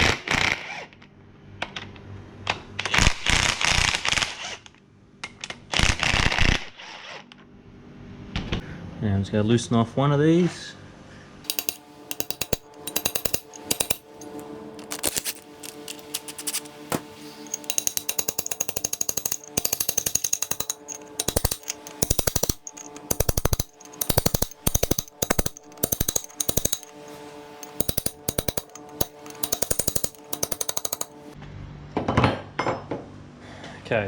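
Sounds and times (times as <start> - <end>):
ratchet wrench clicking: 11.5 - 31.4.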